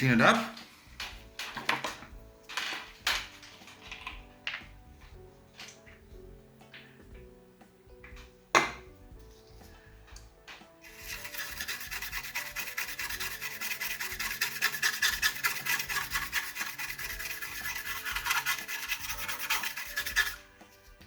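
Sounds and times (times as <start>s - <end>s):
scrubbing on circuit board: 10.8s - 21.0s.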